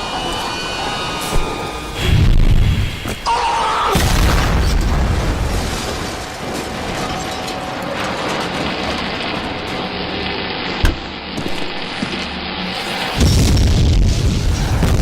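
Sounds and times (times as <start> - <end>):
loud boom with rumble: 13.1 - 15.0.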